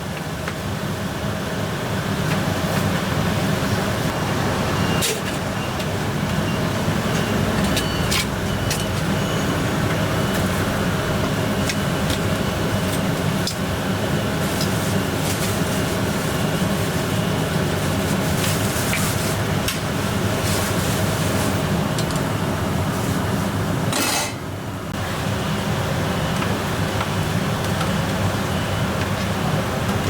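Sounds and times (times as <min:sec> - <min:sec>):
exhaust hood and burners roaring: 0:00.0 - 0:30.0
metal utensils clinking: 0:23.9 - 0:24.4.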